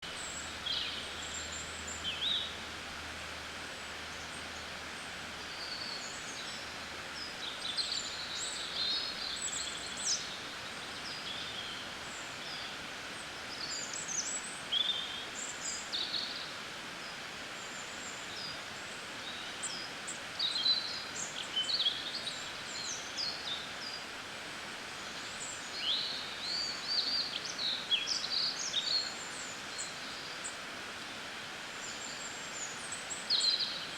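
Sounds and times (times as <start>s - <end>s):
outdoor ambient hiss: 0.0s - 33.9s.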